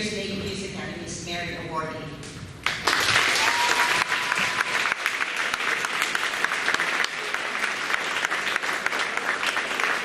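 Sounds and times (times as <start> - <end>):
audience applauding: 2.6 - 10.0.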